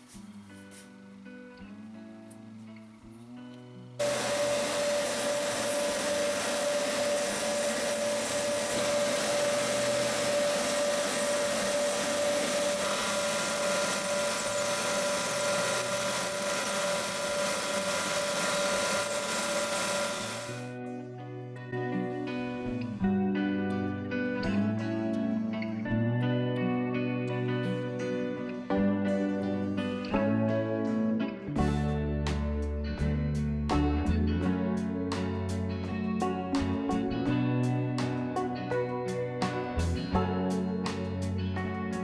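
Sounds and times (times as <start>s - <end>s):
power tool motor whining: 3.1s - 20.8s.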